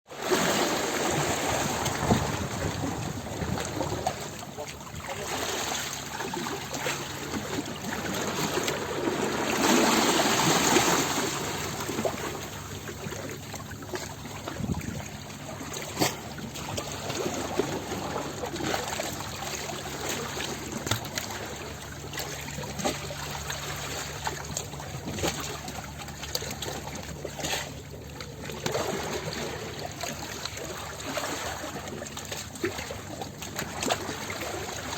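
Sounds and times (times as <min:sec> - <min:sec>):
water trickling and gurgling: 0:00.3 - 0:34.9.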